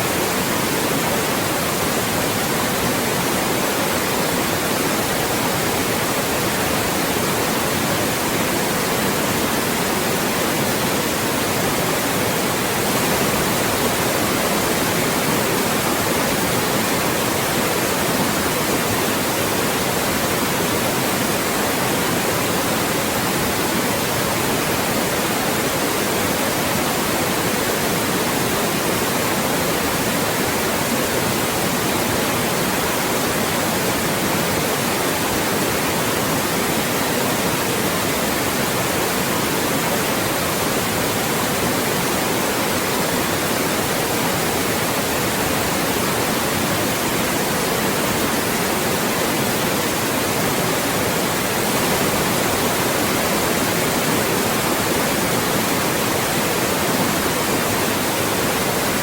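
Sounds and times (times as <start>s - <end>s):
steady white noise hiss: 0.0s - 59.0s.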